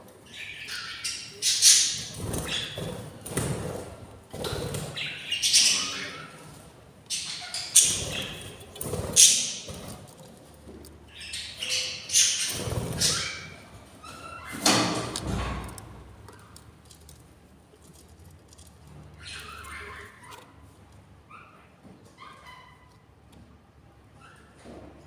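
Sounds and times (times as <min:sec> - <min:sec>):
chicks squawking: 0:00.3 - 0:03.6, 0:04.7 - 0:10.0, 0:11.1 - 0:15.0, 0:19.2 - 0:20.6.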